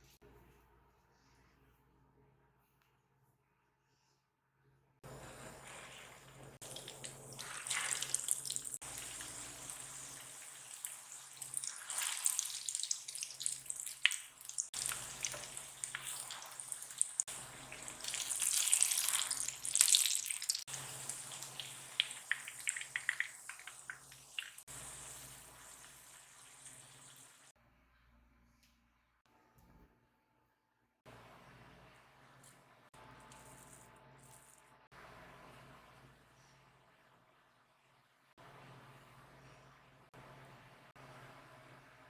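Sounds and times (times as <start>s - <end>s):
water running and splashing: 5.3s - 27.5s.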